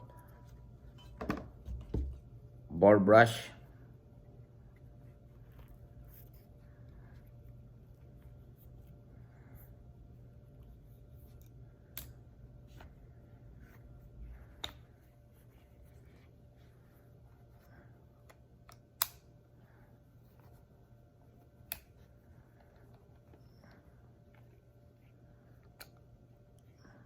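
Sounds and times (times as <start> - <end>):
low steady hum: 0.0 - 27.0.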